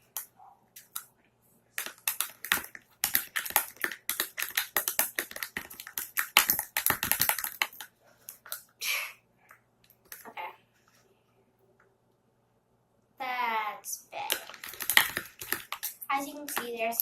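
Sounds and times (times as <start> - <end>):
slime being stirred: 0.0 - 1.1, 1.8 - 8.7, 14.2 - 17.0.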